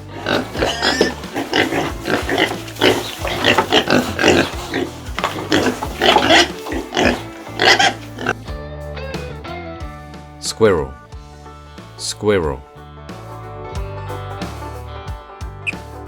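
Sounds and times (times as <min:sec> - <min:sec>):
pig grunting and squealing: 0:00.0 - 0:08.5.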